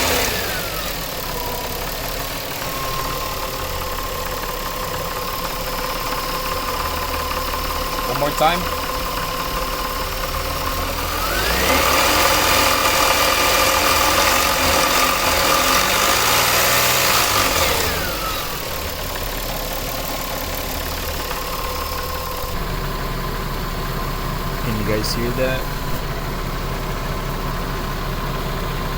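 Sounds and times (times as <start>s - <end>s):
car engine revving: 0.0s - 28.4s
engine grinding knock: 0.0s - 28.9s.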